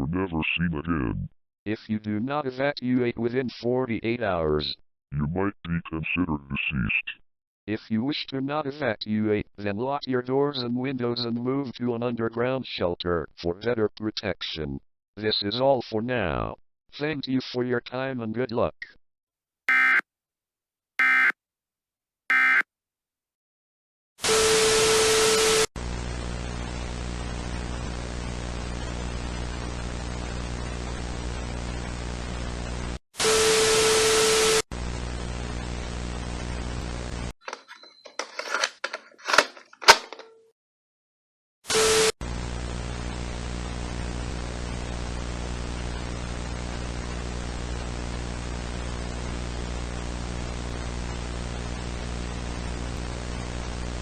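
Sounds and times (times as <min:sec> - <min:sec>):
static with hum: 0:19.7 - 0:20.0, 0:21.0 - 0:21.3, 0:22.3 - 0:22.6, 0:25.6 - 0:33.0, 0:34.8 - 0:37.3, 0:41.7 - 0:54.0
warbling digital tone bursts: 0:19.7 - 0:20.0, 0:21.0 - 0:21.3, 0:22.3 - 0:22.6.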